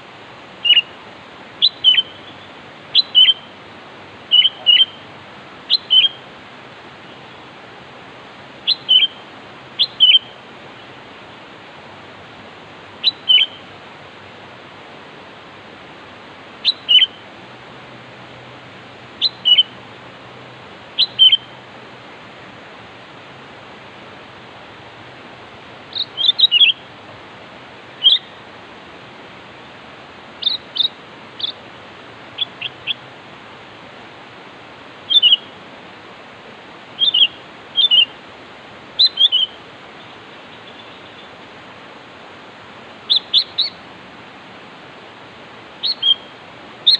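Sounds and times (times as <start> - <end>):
faint steady hiss: 0.0 - 46.9
bird chirping calls: 0.6 - 0.9, 1.6 - 3.5, 4.3 - 5.1, 5.7 - 6.2, 8.6 - 9.2, 9.8 - 10.4, 13.0 - 13.7, 16.6 - 17.2, 19.2 - 19.8, 21.0 - 21.6, 25.9 - 26.9, 28.0 - 28.4, 30.4 - 31.7, 32.3 - 33.1, 35.1 - 35.5, 37.0 - 38.2, 39.0 - 41.4, 43.0 - 43.8, 45.8 - 46.9.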